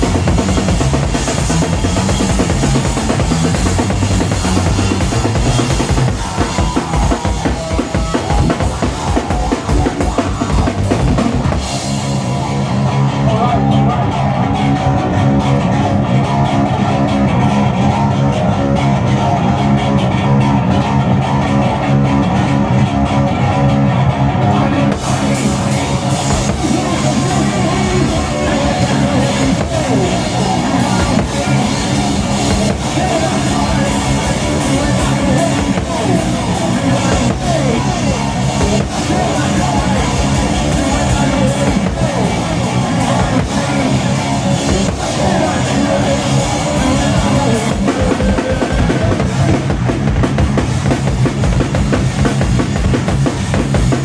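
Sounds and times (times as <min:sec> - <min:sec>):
fast dense drumming: 0:00.0 - 0:13.4, 0:24.9 - 0:54.0
distorted bass guitar drone: 0:00.0 - 0:54.0.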